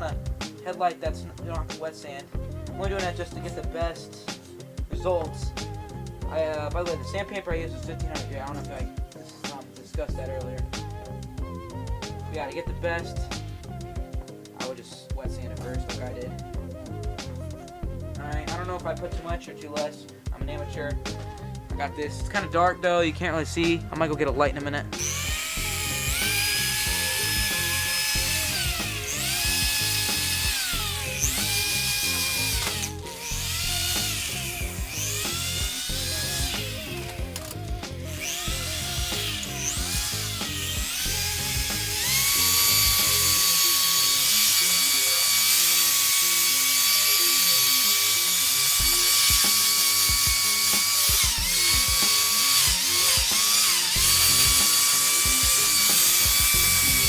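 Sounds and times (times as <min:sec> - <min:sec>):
electric buffer motor whining: 0:25.0 - 0:57.0.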